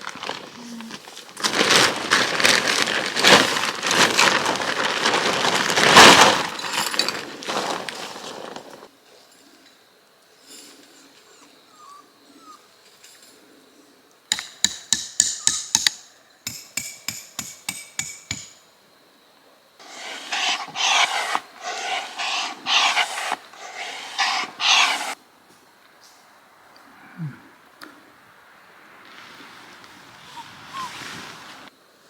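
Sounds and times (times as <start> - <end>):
sharp metallic taps: 14.3 - 18.6
tool rasping strokes: 19.8 - 25.2.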